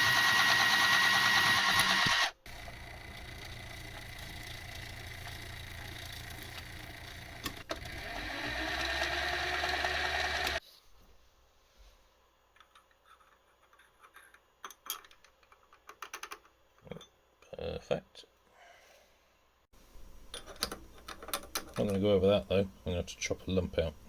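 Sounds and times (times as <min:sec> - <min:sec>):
power tool motor running: 0:00.0 - 0:10.6.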